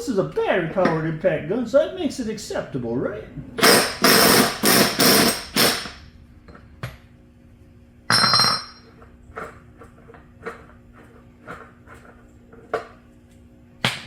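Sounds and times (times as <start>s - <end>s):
impact wrench hammering: 3.6s - 6.0s, 8.1s - 8.8s.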